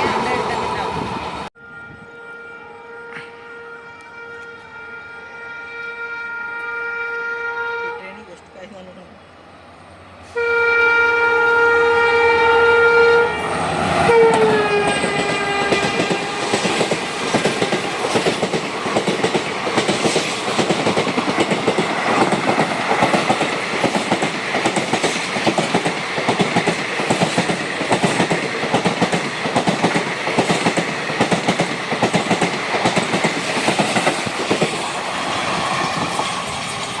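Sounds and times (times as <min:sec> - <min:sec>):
locomotive horn blasts: 0:01.6 - 0:08.3, 0:10.3 - 0:16.4
train wheels clickety-clack: 0:14.2 - 0:37.0.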